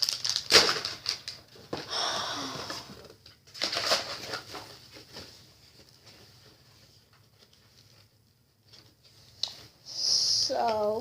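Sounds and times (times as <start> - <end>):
plastic packaging crinkling: 0.0 - 1.6, 3.4 - 6.2.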